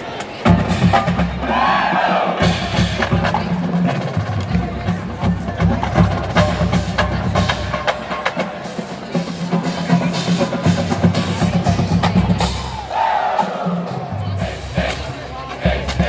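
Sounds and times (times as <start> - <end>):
drumline strikes: 0.2 - 16.0.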